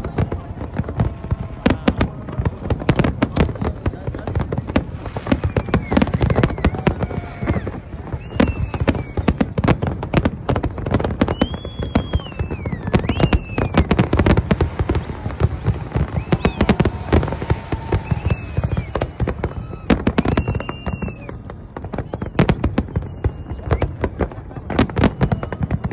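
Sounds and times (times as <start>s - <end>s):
crowd voices: 0.0s - 25.9s
fireworks bangs and crackles: 0.0s - 25.9s
high gliding shouts or whistles: 5.0s - 9.6s, 11.2s - 24.0s.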